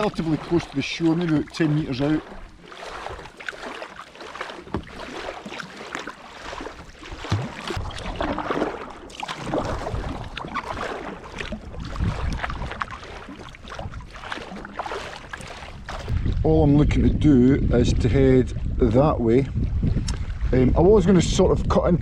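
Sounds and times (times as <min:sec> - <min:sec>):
paddle splashing in water: 0:00.0 - 0:16.2
wind buffeting microphone: 0:07.2 - 0:22.0.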